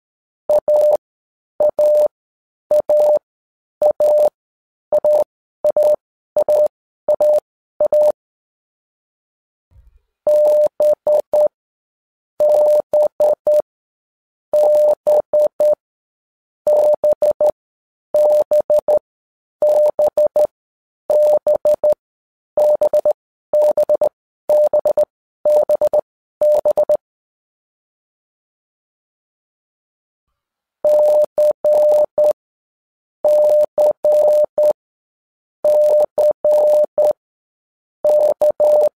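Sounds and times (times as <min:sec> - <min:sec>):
morse code beeps: 0:00.5 - 0:01.0, 0:01.6 - 0:02.1, 0:02.7 - 0:03.2, 0:03.8 - 0:08.2, 0:10.3 - 0:11.6, 0:12.4 - 0:13.6, 0:14.6 - 0:15.8, 0:16.7 - 0:17.6, 0:18.2 - 0:19.0, 0:19.6 - 0:20.5, 0:21.1 - 0:22.0, 0:22.6 - 0:27.0, 0:30.9 - 0:32.4, 0:33.3 - 0:34.8, 0:35.6 - 0:37.2, 0:38.1 - 0:38.9.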